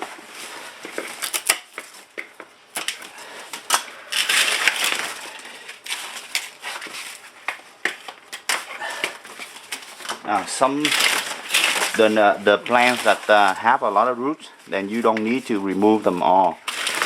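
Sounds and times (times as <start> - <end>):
fern leaves snapping and tearing: 1.2 - 1.8, 2.8 - 7.3, 8.3 - 17.0.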